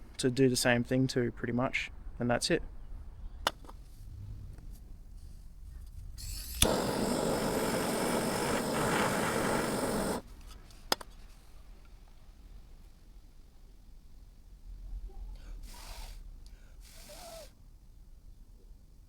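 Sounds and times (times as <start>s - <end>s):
steady rushing hiss: 3.8s - 10.5s, 15.5s - 17.6s.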